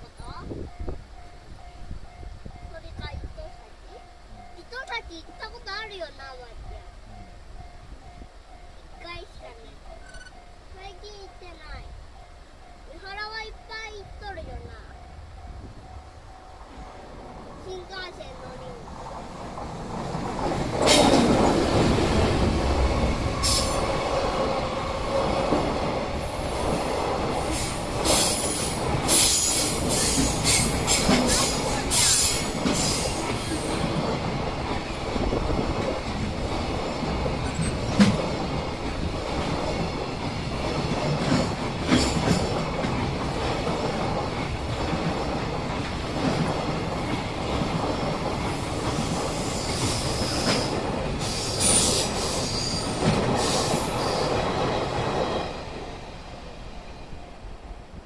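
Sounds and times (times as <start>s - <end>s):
freight train rumbling past: 0.0s - 58.0s
high-pitched wheel squeals: 10.0s - 10.4s
wheels clattering on rails: 16.3s - 56.0s.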